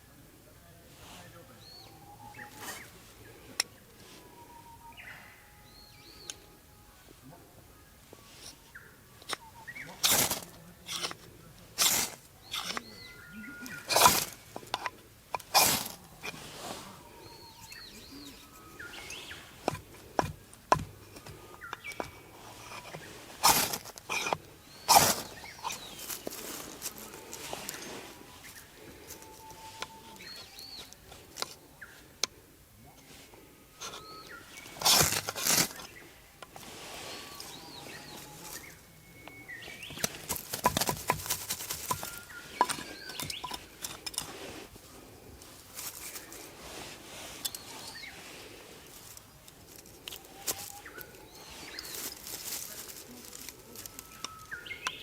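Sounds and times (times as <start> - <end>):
birds chirping and calling: 0.0 - 55.0
scraping or rustling noise: 8.0 - 13.1, 13.7 - 20.2, 21.0 - 31.6, 33.1 - 38.8, 39.5 - 54.6.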